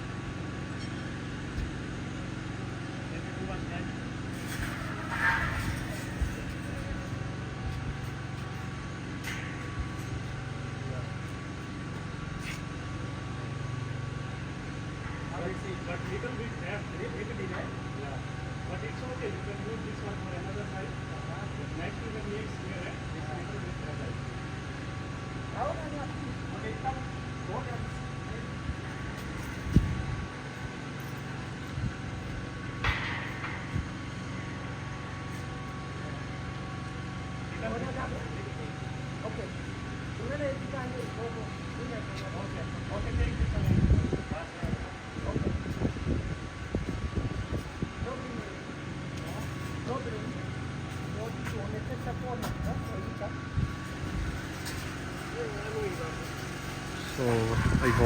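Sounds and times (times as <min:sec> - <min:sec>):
low machine hum: 0:00.0 - 0:58.0.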